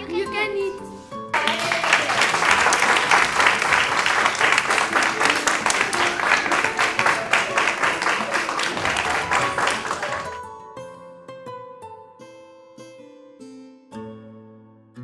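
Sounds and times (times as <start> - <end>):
audience applauding: 1.3 - 10.4.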